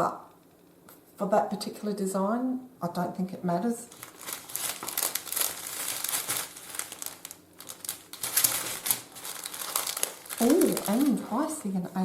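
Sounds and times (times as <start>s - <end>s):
plastic bags crinkling: 3.9s - 12.0s.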